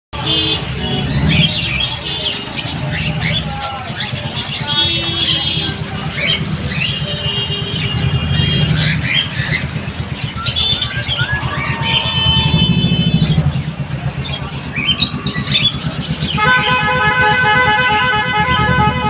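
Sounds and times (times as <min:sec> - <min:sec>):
street traffic: 0:00.1 - 0:19.0
vehicle horn pulsing: 0:00.2 - 0:03.5, 0:04.5 - 0:19.0
small birds chirping: 0:00.2 - 0:18.5
vehicle engine running: 0:00.2 - 0:19.0.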